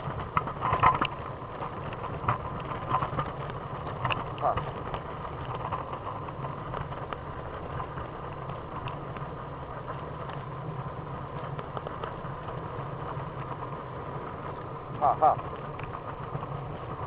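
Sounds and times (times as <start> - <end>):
muffled wheels rolling: 0.0 - 17.0.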